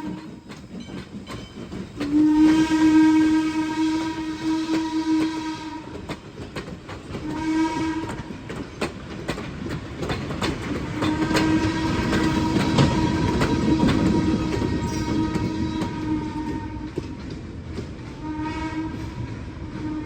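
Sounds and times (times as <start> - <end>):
locomotive clicks and clatter: 0.0 - 3.0, 4.3 - 18.2
steam whistle blasts: 2.0 - 6.0, 7.2 - 8.2, 11.0 - 16.9, 18.2 - 20.0.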